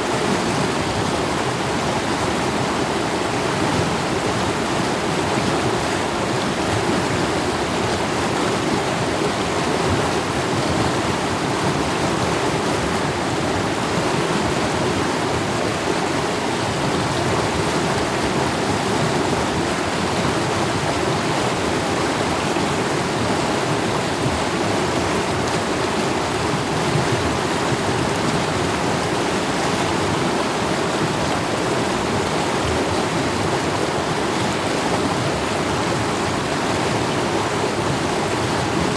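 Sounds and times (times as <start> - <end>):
stream rushing over rocks: 0.0 - 38.9.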